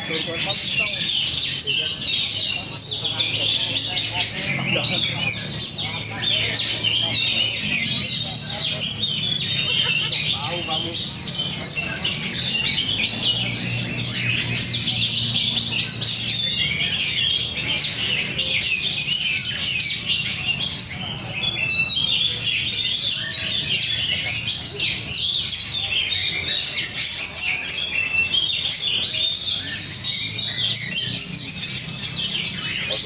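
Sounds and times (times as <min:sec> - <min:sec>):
caged songbirds chirping: 0:00.0 - 0:33.0.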